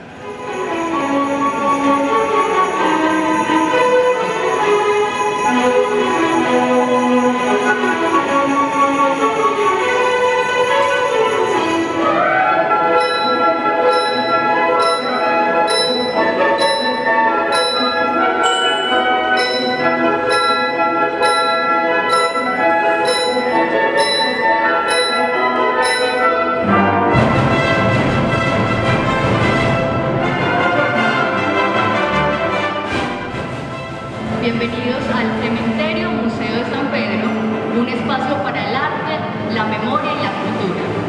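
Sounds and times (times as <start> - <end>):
symphony orchestra playing: 0.0 - 38.4
bright percussion strokes: 0.2 - 27.5.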